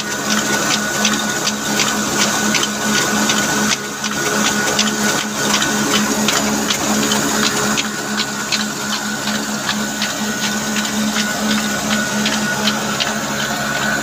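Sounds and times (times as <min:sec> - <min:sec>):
diesel engine running: 0:00.0 - 0:14.0.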